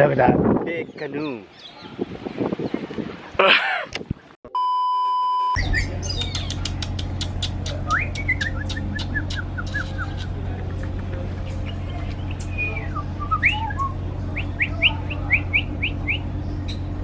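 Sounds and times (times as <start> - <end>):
bird chirping: 5.6 - 17.0
steady low hum: 5.6 - 17.0
scattered clicks: 6.2 - 12.6.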